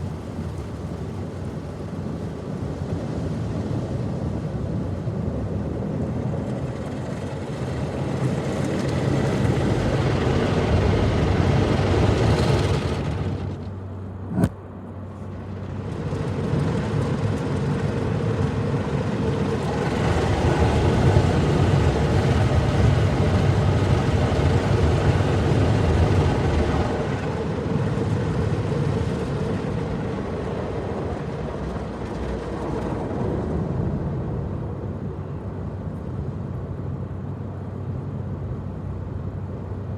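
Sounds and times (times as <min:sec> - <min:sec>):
car wash machinery rumbling: 0:07.7 - 0:14.4, 0:17.2 - 0:34.4.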